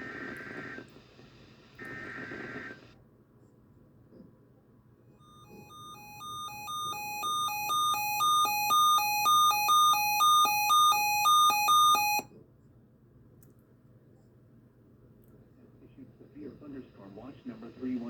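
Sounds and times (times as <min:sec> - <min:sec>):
two-tone electronic alarm beeping: 0:05.2 - 0:12.3.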